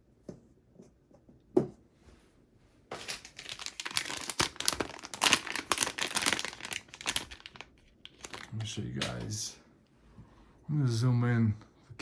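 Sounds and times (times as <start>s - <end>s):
plastic packaging crinkling: 3.0s - 9.3s.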